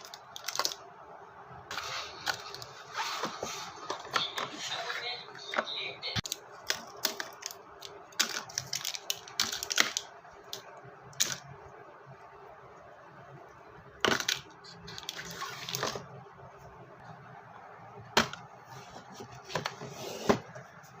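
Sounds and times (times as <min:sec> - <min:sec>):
containers clicking and clattering: 0:00.0 - 0:00.8, 0:05.5 - 0:10.6, 0:14.0 - 0:16.1.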